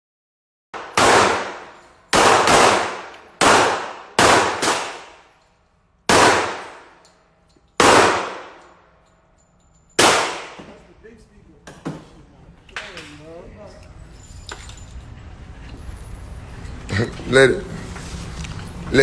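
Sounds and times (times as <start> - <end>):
gunshots with echo: 0.8 - 5.3, 6.1 - 7.0, 7.8 - 8.6, 10.0 - 10.7.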